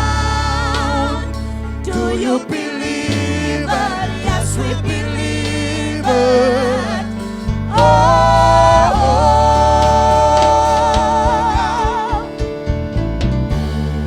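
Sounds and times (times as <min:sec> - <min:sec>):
solo voice singing with vibrato: 0:00.0 - 0:12.6
instrumental backing with bass: 0:00.0 - 0:14.0.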